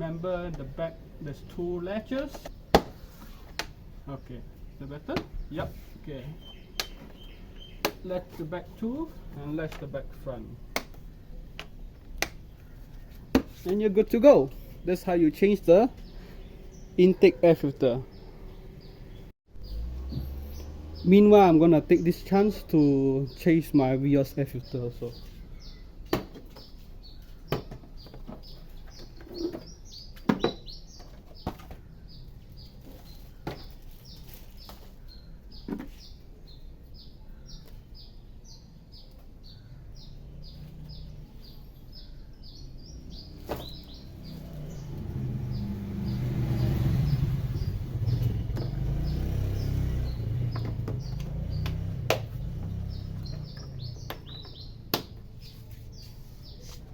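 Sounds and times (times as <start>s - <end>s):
small birds chirping: 0.0s - 56.9s
sharp knocks and clicks: 6.8s - 8.1s, 48.2s - 48.8s, 50.5s - 55.3s.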